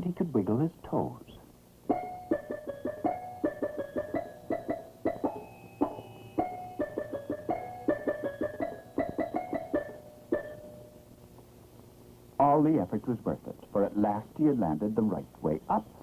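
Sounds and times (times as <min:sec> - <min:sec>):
cartoon background music: 0:01.9 - 0:11.0.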